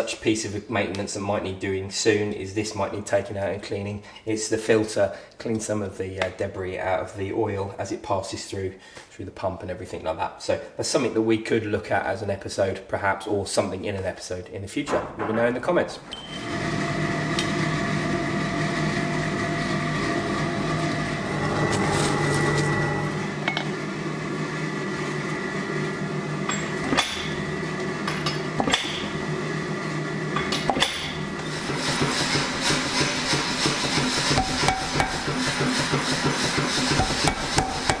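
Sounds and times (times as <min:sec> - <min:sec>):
motor and compressor hum: 0:16.0 - 0:38.0
power hammer blows: 0:30.8 - 0:38.0.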